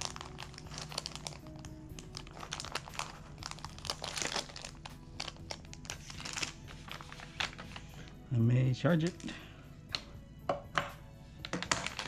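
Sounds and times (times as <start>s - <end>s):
packaging crinkling: 0.0s - 7.8s, 11.6s - 12.0s
soft background music: 0.0s - 12.0s.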